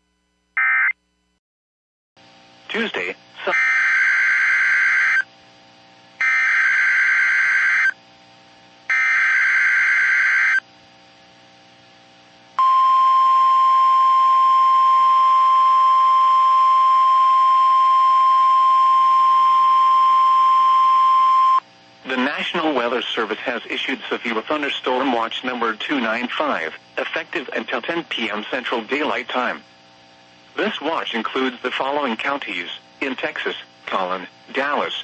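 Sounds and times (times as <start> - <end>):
steady single-pitch alarm tone: 3.5 - 5.3, 6.2 - 8.0, 8.9 - 10.7, 12.6 - 21.7.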